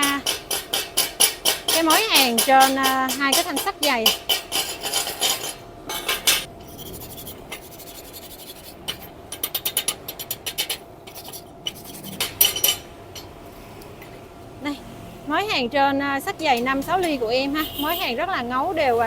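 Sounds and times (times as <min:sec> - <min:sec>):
metal scraping on steel: 0:00.0 - 0:13.4.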